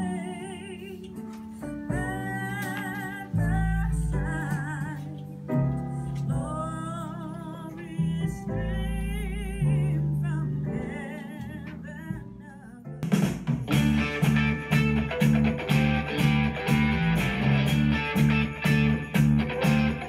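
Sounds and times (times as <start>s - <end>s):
woman singing with vibrato: 0.0s - 1.2s, 1.8s - 5.3s
strummed guitar: 13.7s - 20.0s.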